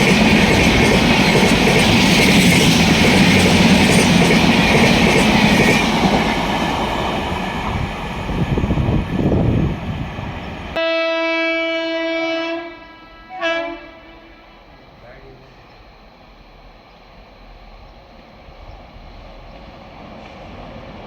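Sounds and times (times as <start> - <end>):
train rushing past: 0.0 - 21.0
locomotive horn blast: 10.8 - 14.7.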